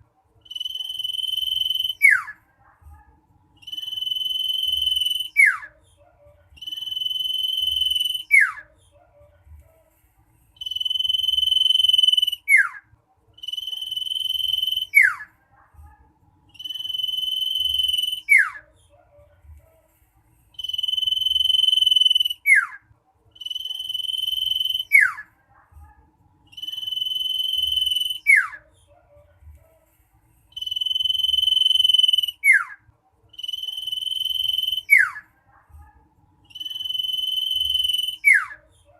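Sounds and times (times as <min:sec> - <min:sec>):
bird singing shrill whistles: 0:00.5 - 0:02.3, 0:03.6 - 0:05.6, 0:06.6 - 0:08.6, 0:13.4 - 0:15.2, 0:16.6 - 0:18.6, 0:26.5 - 0:28.6, 0:33.4 - 0:35.2, 0:36.5 - 0:38.6.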